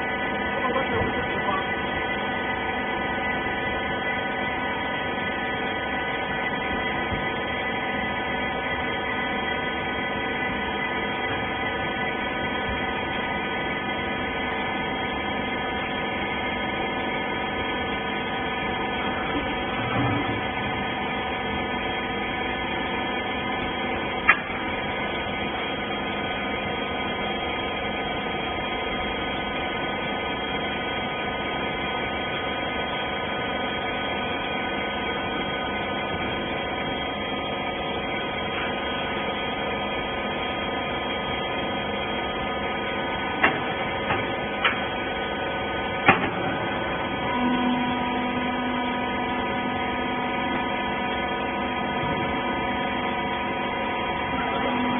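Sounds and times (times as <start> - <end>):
hydraulic pump motor humming: 0.0 - 54.9
low tone: 46.1 - 50.7.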